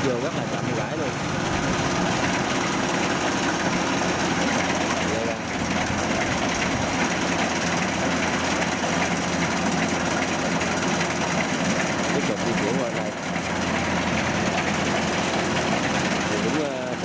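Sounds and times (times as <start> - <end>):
combine harvester diesel engine: 0.0 - 17.0
threshing machinery running: 0.0 - 17.0.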